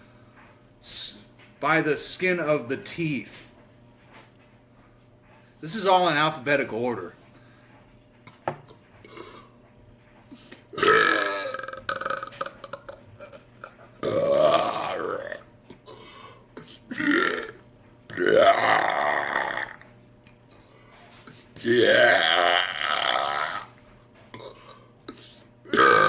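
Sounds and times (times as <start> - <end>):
man belching: 10.8 - 16.1, 16.9 - 19.8, 21.6 - 23.7, 24.3 - 24.8, 25.6 - 26.0.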